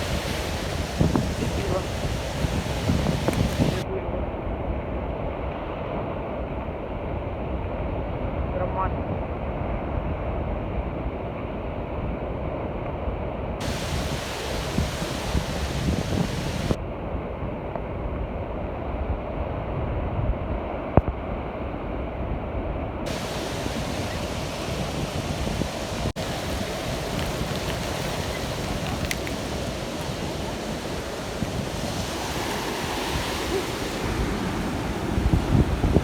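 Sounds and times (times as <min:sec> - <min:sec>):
waves breaking: 0:00.0 - 0:03.9, 0:13.6 - 0:16.8, 0:23.0 - 0:36.0
wind buffeting microphone: 0:00.0 - 0:36.0.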